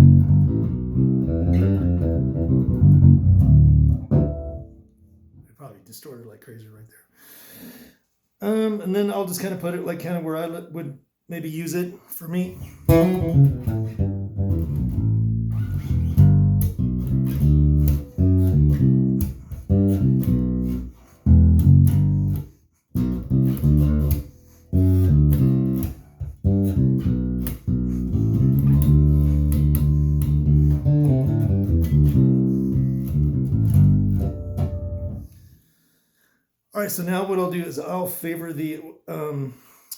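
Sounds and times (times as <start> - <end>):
plucked electric bass line: 0.0 - 4.8, 12.7 - 22.4, 23.0 - 35.3.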